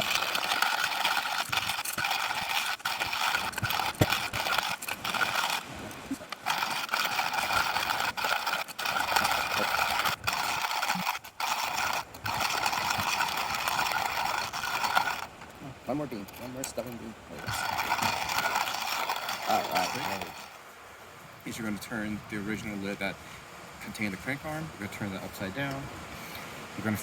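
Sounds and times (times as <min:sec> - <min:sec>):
hand coffee grinder crunching beans: 0:00.0 - 0:20.6.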